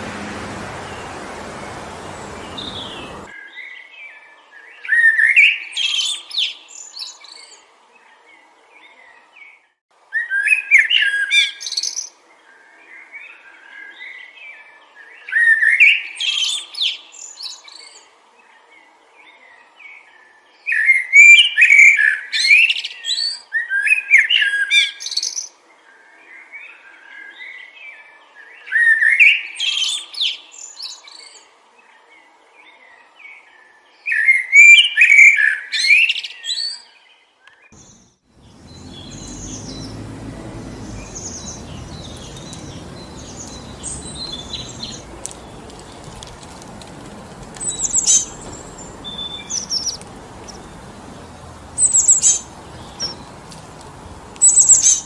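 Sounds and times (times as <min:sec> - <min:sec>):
soft bird chirps: 0:00.0 - 0:03.3, 0:37.8 - 0:55.0
wind noise: 0:00.0 - 0:03.3, 0:38.4 - 0:55.0
songbird singing warbling phrases: 0:00.0 - 0:03.4, 0:37.5 - 0:55.0.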